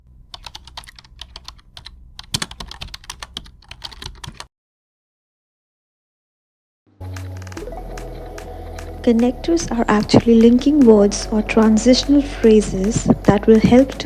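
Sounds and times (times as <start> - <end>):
computer keyboard typing: 0.3 - 4.5.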